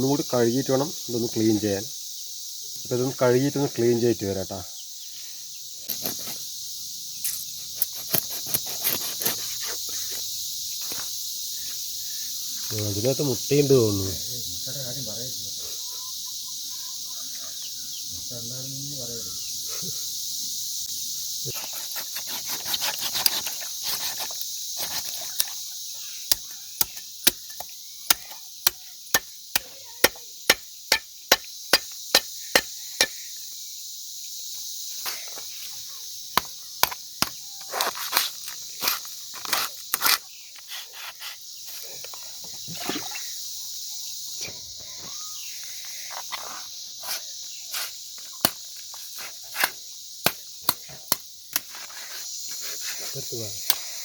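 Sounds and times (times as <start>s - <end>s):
crickets chirring: 0.0s - 54.0s
knife chopping meat: 26.3s - 33.1s.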